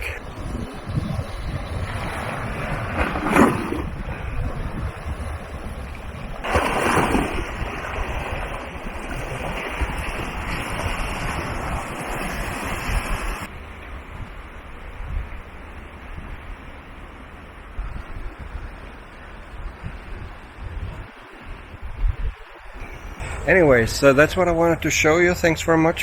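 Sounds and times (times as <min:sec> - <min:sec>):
sea surf washing in: 0:00.0 - 0:13.5, 0:19.8 - 0:26.0
wind buffeting microphone: 0:00.0 - 0:26.0.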